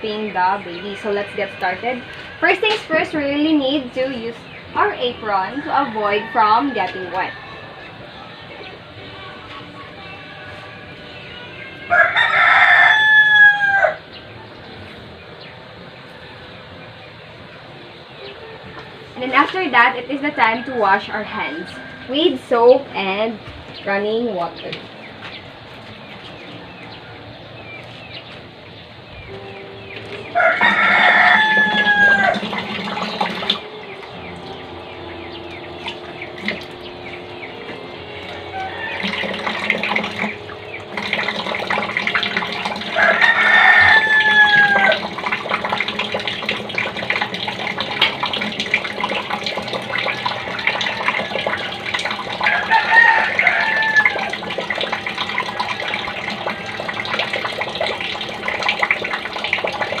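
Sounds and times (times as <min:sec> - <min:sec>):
rooster crowing: 0:00.8 - 0:02.8, 0:05.1 - 0:08.5, 0:11.8 - 0:14.1, 0:20.1 - 0:22.7, 0:30.2 - 0:47.0, 0:49.8 - 0:57.2
water running from a tap: 0:30.4 - 0:34.5, 0:35.8 - 0:36.8, 0:37.9 - 1:00.0.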